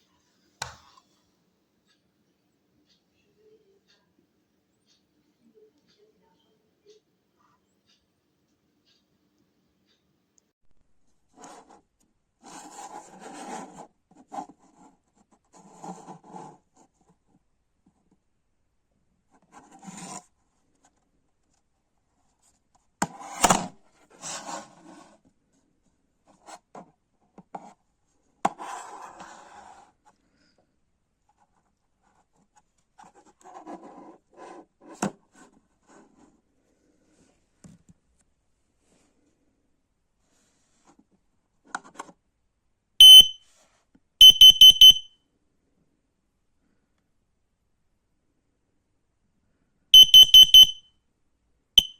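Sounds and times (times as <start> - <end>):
alarm beeping: 43.0 - 43.4, 44.2 - 45.1, 50.0 - 50.8.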